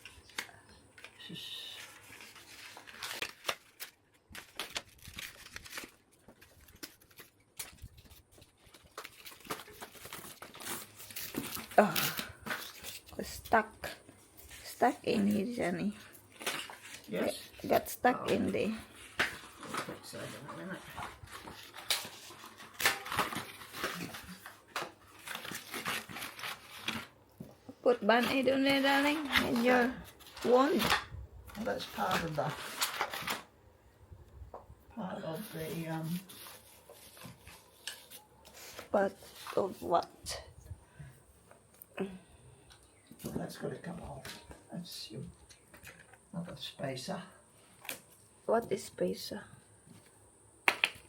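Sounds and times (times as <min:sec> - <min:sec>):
plastic packaging crinkling: 0:00.0 - 0:27.2, 0:28.1 - 0:33.5, 0:35.2 - 0:39.8.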